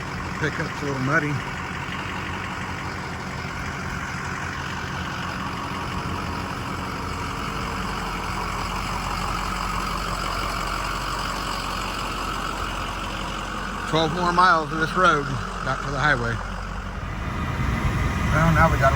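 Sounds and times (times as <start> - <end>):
truck driving on dirt road: 0.0 - 18.9.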